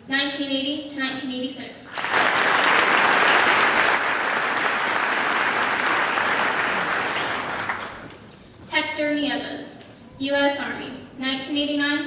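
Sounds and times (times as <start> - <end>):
audience applauding in hall: 1.9 - 8.3.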